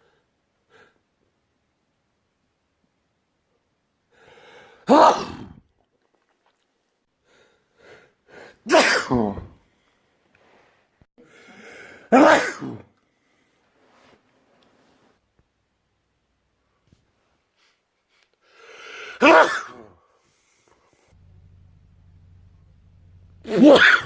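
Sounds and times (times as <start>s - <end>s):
breathy inhale: 4.1s - 4.8s, 9.7s - 12.1s, 18.4s - 19.2s
man sneezing: 4.8s - 5.6s, 8.6s - 9.6s, 12.0s - 12.9s, 19.0s - 20.1s, 23.5s - 24.0s
man gasping: 11.2s - 12.2s.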